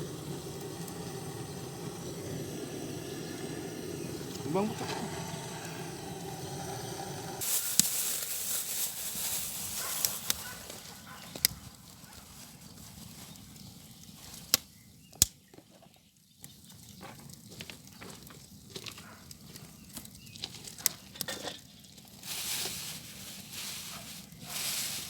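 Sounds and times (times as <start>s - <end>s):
hiss of burning kindling: 0.0s - 14.6s, 22.0s - 25.0s
burning wood cracking: 0.0s - 15.4s.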